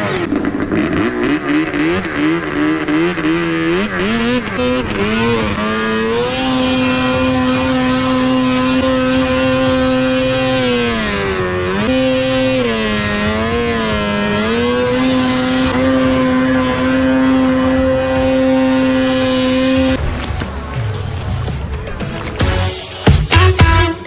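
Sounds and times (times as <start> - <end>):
snowmobile engine revving: 0.0 - 24.0.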